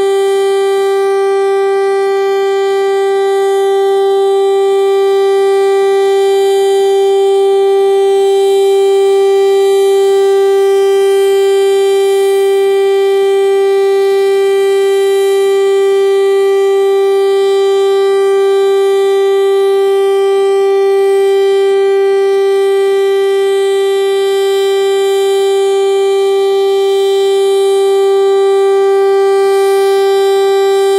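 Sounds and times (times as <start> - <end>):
warning siren steady tone: 0.0 - 30.9.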